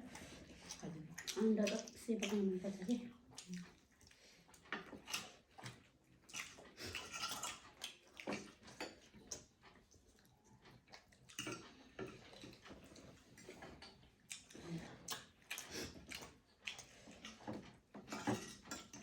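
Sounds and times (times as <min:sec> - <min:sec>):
chewing clicks and smacks: 0:03.1 - 0:17.7.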